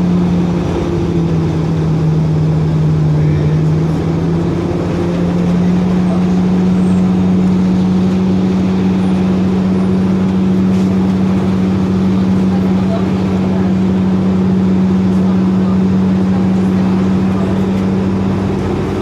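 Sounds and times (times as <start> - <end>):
bus cabin drone: 0.0 - 19.0.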